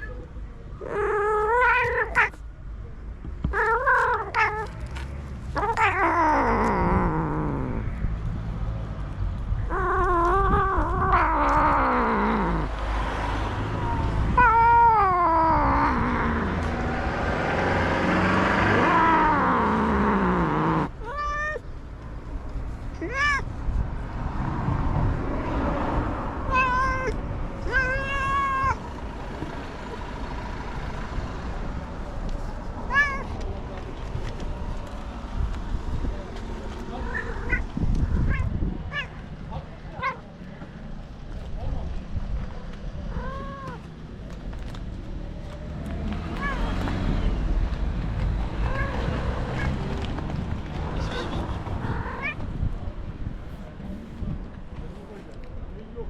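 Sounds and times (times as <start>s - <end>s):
cat meowing: 0.8s - 2.4s, 3.5s - 8.0s, 9.6s - 12.8s, 13.8s - 16.7s, 18.7s - 21.6s, 23.0s - 23.5s, 26.5s - 28.9s, 32.8s - 33.4s, 37.0s - 39.2s, 40.0s - 40.2s, 43.1s - 43.9s, 46.4s - 46.7s, 48.6s - 49.8s, 51.0s - 52.5s.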